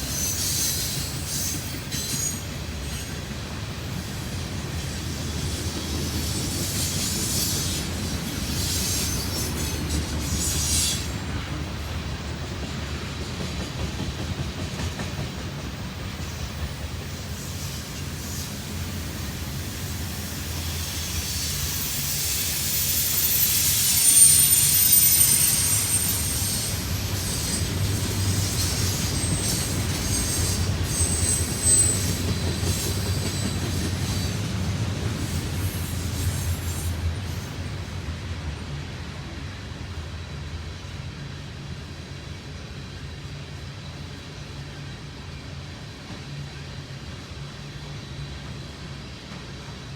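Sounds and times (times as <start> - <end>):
train wheels squealing: 0.0 - 11.7, 12.4 - 37.9
train rumble: 0.0 - 49.9.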